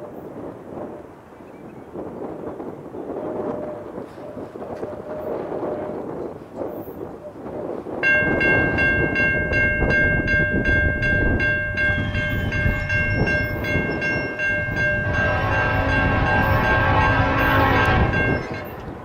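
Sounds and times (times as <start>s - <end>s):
low wind rumble: 0.0s - 19.0s
railroad crossing bell ringing: 8.0s - 19.0s
locomotive air horn blowing: 11.9s - 19.0s.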